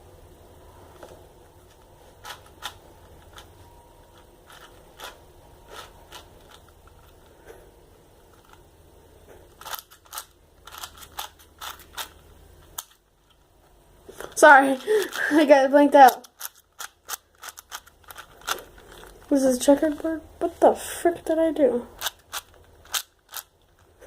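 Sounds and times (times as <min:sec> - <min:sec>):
puzzle cube plastic clicks: 0:01.8 - 0:03.5, 0:04.1 - 0:07.3, 0:09.5 - 0:13.4, 0:14.2 - 0:15.4, 0:16.0 - 0:19.3, 0:22.0 - 0:23.9.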